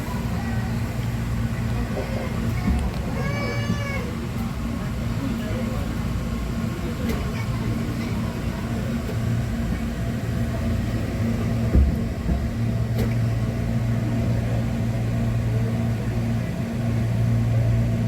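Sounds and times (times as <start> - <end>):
low mechanical hum: 0.0 - 18.0.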